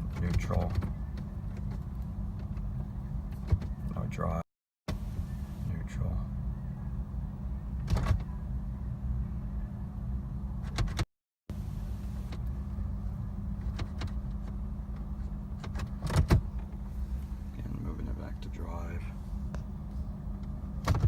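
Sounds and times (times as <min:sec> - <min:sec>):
steady low rumble: 0:11.5 - 0:21.0.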